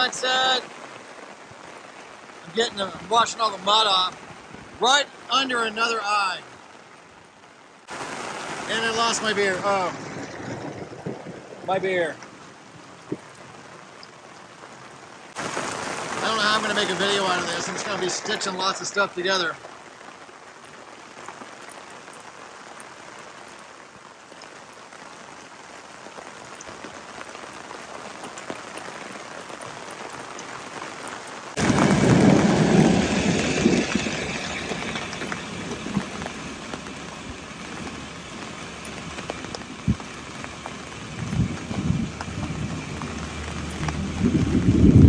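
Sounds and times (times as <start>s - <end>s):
heavy rain: 0.0s - 45.0s
low thunder rumbling: 7.9s - 13.6s, 31.6s - 45.0s.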